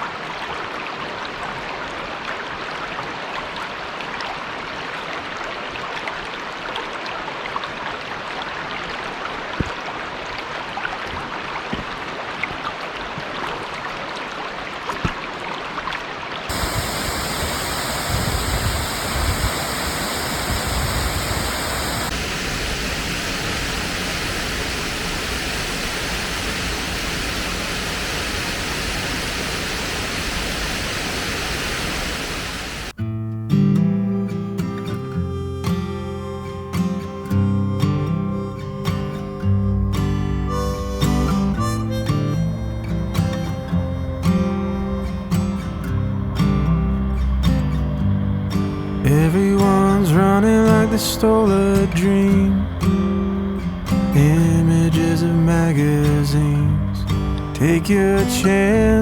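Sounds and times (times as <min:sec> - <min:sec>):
waterfall rushing: 0:16.5 - 0:33.0, 0:34.2 - 0:39.4, 0:40.1 - 0:59.0.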